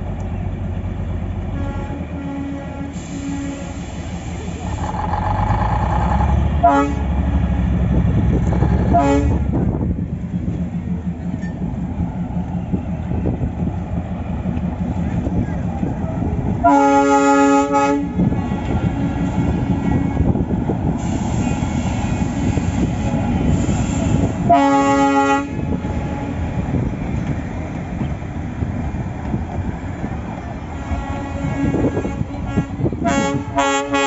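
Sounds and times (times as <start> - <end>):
train rumbling: 0.0 - 34.0
train horn blasts: 1.5 - 4.0, 6.6 - 7.2, 8.6 - 9.7, 16.6 - 20.4, 21.0 - 26.6, 30.6 - 34.0.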